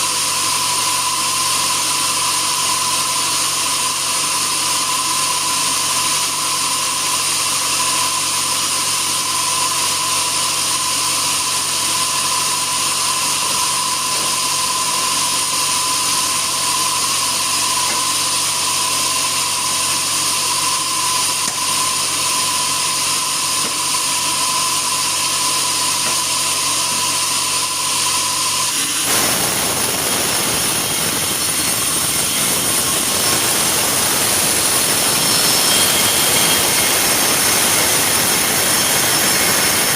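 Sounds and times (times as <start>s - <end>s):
high machine whine: 0.0s - 39.9s
sawmill machinery running: 0.0s - 39.9s.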